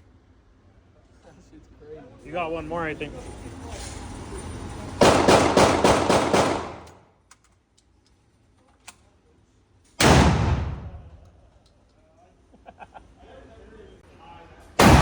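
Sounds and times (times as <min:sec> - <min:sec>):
gunshots: 0:05.0 - 0:07.0, 0:10.0 - 0:11.2, 0:14.8 - 0:15.0.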